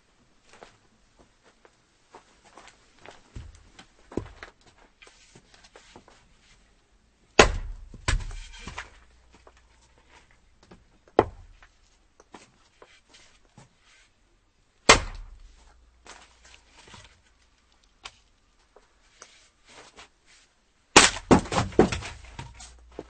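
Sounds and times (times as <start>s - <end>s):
axe chopping firewood: 7.4s - 9.1s, 11.2s - 11.6s, 14.8s - 16.3s, 20.9s - 23.0s
wood knocking and clattering: 7.7s - 9.6s, 21.0s - 23.0s.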